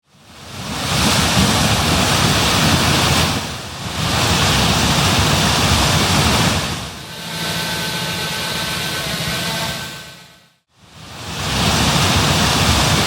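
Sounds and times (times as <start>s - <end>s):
wind buffeting microphone: 0.3s - 7.0s.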